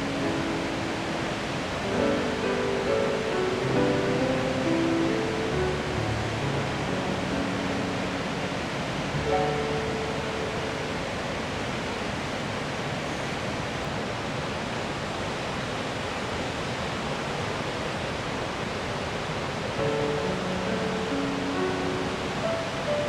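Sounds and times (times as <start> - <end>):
soft music with held notes: 0.0 - 11.6, 19.8 - 23.0
waterfall rushing: 0.0 - 23.0.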